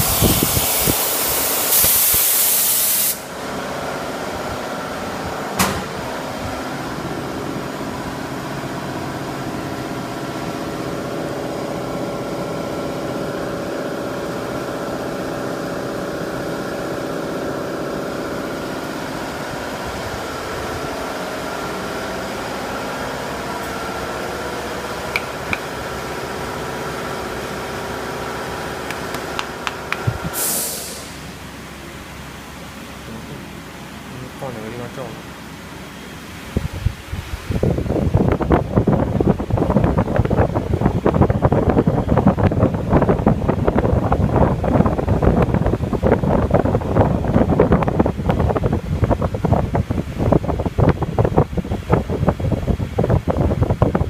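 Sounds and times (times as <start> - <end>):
loud hiss: 0.0 - 3.4, 30.0 - 31.4.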